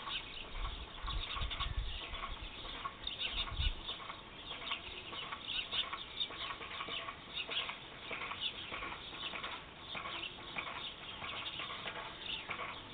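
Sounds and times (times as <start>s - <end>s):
small birds chirping: 0.0s - 12.9s.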